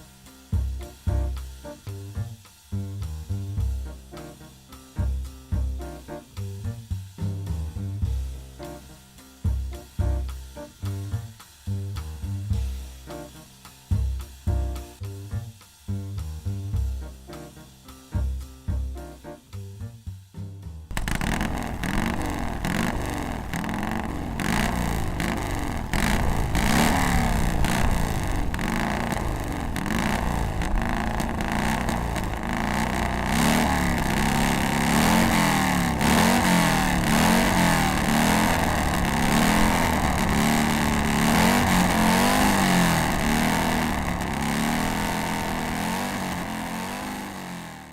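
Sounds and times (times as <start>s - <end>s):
motorcycle engine revving: 20.9s - 47.9s.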